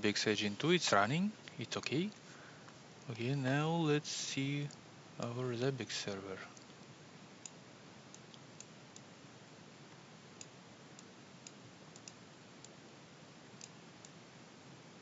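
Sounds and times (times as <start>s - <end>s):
faint room tone hiss: 0.0s - 15.0s
computer mouse clicks: 7.4s - 9.1s, 10.4s - 12.8s, 13.6s - 14.2s.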